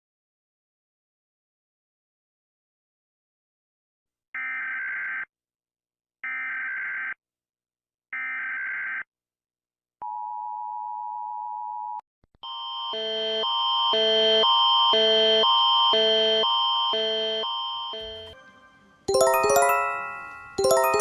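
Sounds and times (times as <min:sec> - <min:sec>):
multi-tone alarm: 0:04.4 - 0:05.3, 0:06.2 - 0:07.2, 0:08.2 - 0:09.1, 0:12.4 - 0:21.0
steady attention tone: 0:18.0 - 0:21.0.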